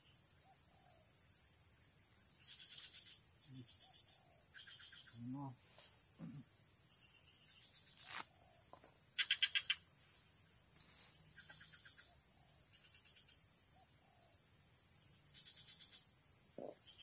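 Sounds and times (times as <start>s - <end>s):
high insect drone: 0.0s - 17.0s
small animal sharp chirps: 9.2s - 9.8s.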